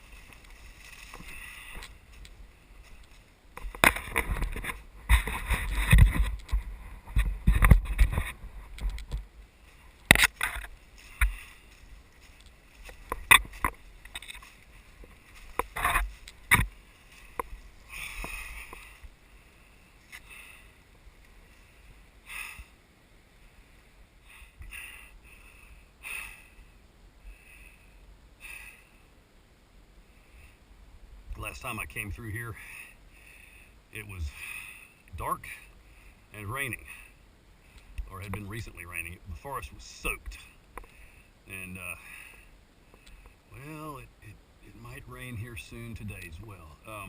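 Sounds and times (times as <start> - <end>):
footsteps through leaf litter: 0.0 - 2.2
twigs snapping: 10.0 - 17.6.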